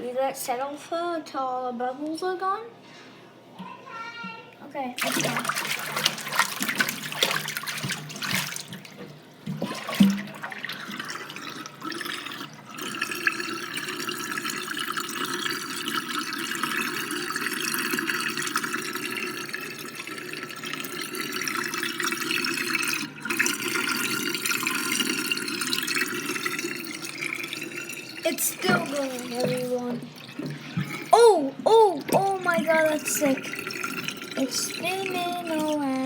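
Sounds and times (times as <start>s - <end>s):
water draining down sink plughole: 5.0s - 36.0s.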